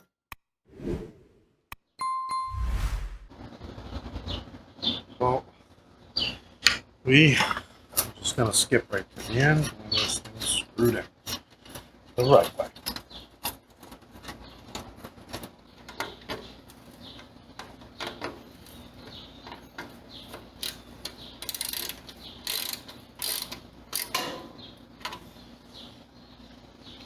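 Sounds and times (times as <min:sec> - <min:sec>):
metal grill parts clinking: 0:09.0 - 0:25.3.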